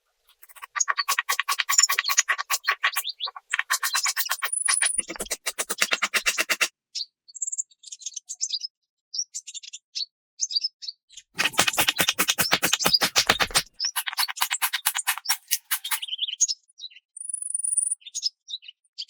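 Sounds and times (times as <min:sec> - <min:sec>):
fast rattle of sharp clicks: 0:00.3 - 0:06.7, 0:11.4 - 0:16.0
birds chirping: 0:00.4 - 0:06.7, 0:11.4 - 0:16.1.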